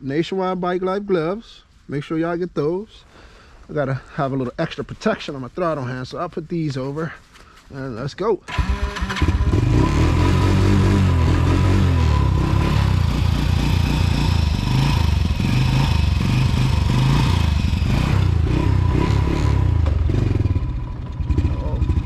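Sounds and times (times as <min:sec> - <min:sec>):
small engine revving: 0:08.5 - 0:22.0.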